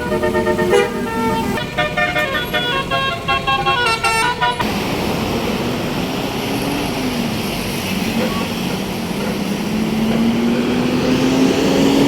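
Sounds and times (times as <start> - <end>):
bus musical air horn tune: 0.0 - 4.7
steady noisy rumble: 0.0 - 11.0.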